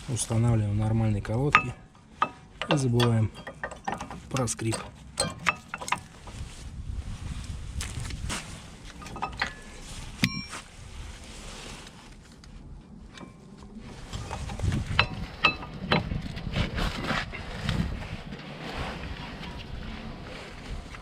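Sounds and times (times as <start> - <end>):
metal clinks and knocks: 1.4 - 6.4, 9.0 - 10.7, 14.2 - 16.3.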